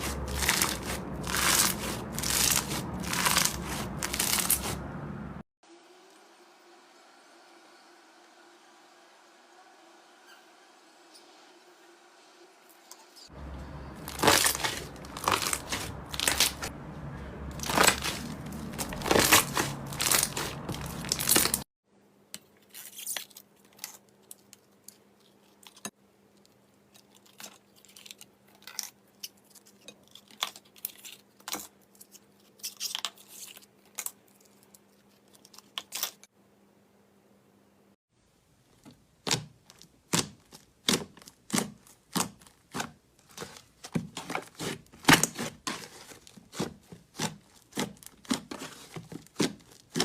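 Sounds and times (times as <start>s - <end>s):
slime crackling and popping: 0.0s - 4.7s, 14.0s - 16.7s, 17.6s - 21.6s.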